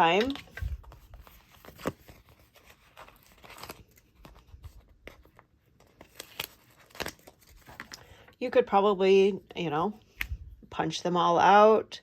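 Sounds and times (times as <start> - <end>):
paper tearing and rustling: 0.2 - 8.0.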